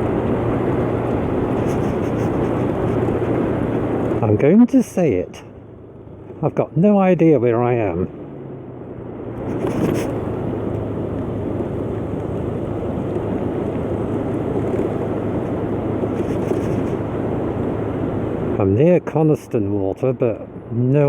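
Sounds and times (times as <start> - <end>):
scooter engine running: 0.0 - 4.2, 9.3 - 17.5
wind on microphone: 0.0 - 4.3, 13.2 - 18.5.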